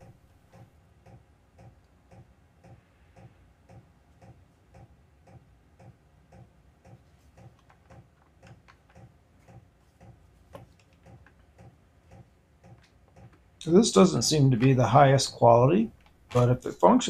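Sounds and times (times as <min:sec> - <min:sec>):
clock ticking: 0:00.0 - 0:17.0.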